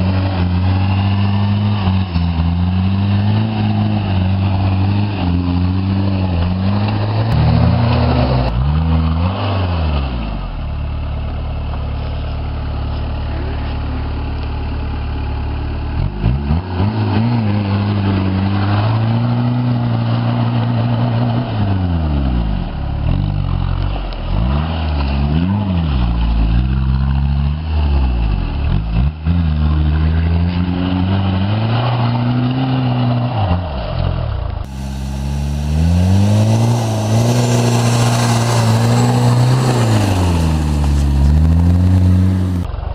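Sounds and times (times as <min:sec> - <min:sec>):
car engine revving: 0:00.0 - 0:42.7.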